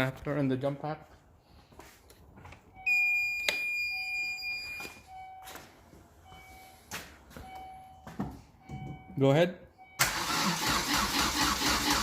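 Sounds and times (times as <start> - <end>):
jump starter beeping: 9.8 - 12.0.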